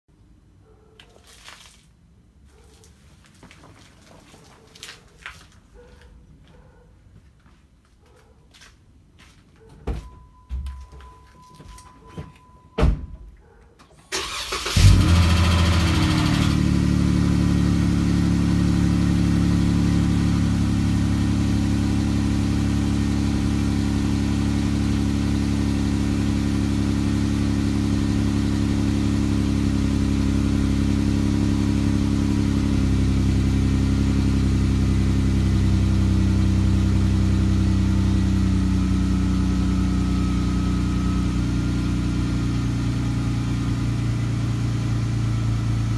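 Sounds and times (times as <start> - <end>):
engine cranking: 14.1 - 16.3
car engine idling: 14.1 - 45.9
engine revving flare: 14.2 - 24.1.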